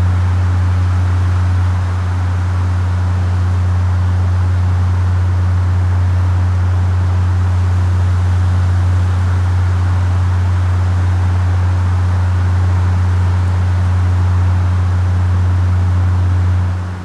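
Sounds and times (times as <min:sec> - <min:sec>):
low-frequency hum: 0:07.9 - 0:17.0.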